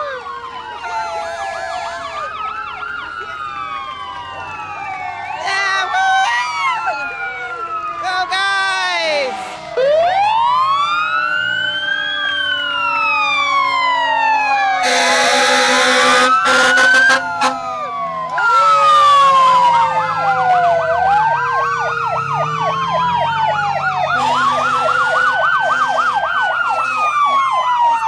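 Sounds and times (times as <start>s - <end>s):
fast yelping siren warble: 0.0s - 7.8s
sirens wailing: 0.0s - 28.0s.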